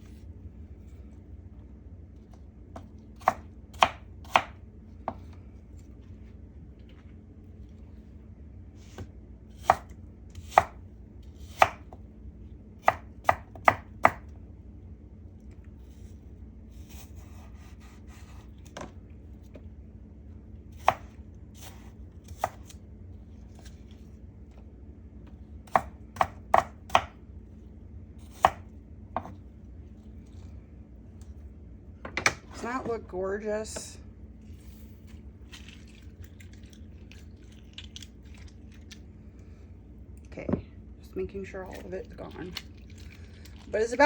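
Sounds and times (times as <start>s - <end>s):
knife chopping on cutting board: 2.8s - 5.2s, 9.6s - 10.8s, 11.4s - 12.0s, 12.8s - 14.2s, 20.8s - 22.8s, 25.7s - 27.2s, 28.2s - 29.4s.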